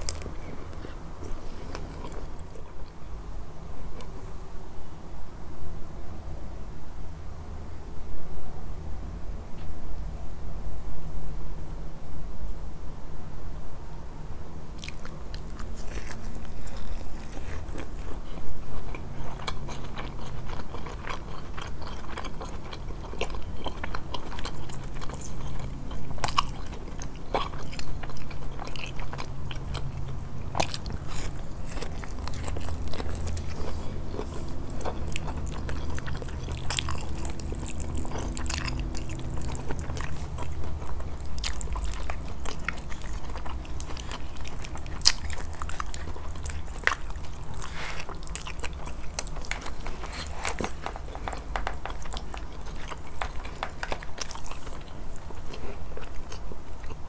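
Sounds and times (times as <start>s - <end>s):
person chewing food: 0.0s - 3.1s, 14.8s - 57.0s.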